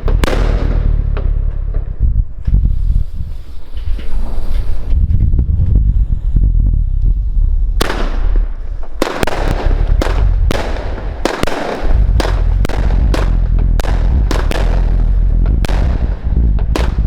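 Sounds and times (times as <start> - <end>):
firework bangs: 0.0 - 5.0, 7.8 - 17.0
low rumble: 0.0 - 17.0
hissing crackle: 2.5 - 17.0.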